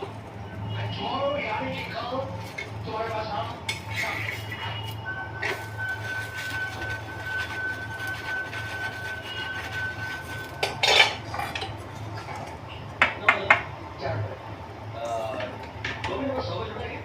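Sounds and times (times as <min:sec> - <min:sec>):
dishes and utensils clattering: 0:01.8 - 0:02.8, 0:03.6 - 0:13.6
steady high beep tone: 0:04.2 - 0:10.8.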